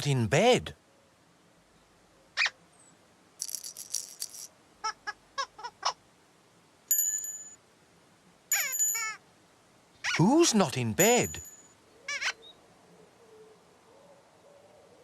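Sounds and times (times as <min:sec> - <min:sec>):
rattle clatter: 0:03.4 - 0:04.5
bell-like chime: 0:06.9 - 0:07.6, 0:08.5 - 0:09.2, 0:11.0 - 0:11.8.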